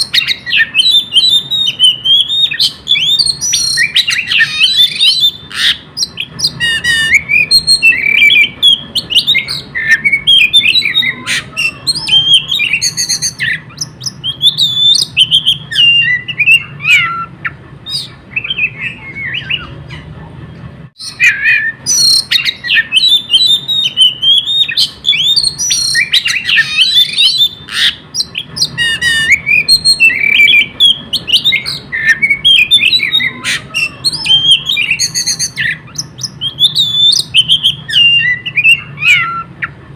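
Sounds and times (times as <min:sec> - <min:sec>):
bird singing whistles and chirps: 0:00.0 - 0:20.1, 0:21.0 - 0:39.7.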